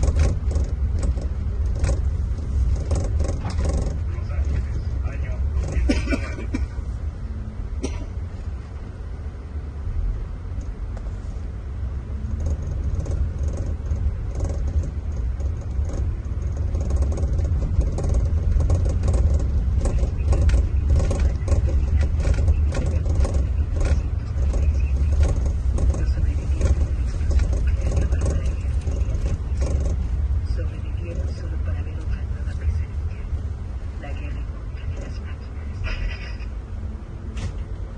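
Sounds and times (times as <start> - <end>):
light rattles: 0.0 - 7.1, 10.4 - 36.6
coach diesel engine drone: 0.0 - 37.9.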